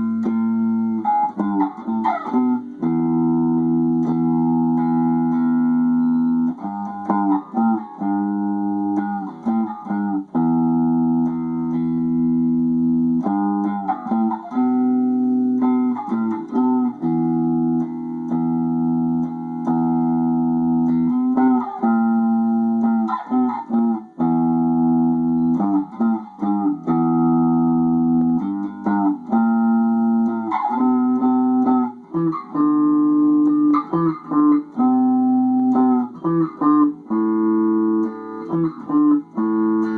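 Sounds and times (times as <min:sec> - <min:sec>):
solo instrument playing chords: 0:00.0 - 0:39.9.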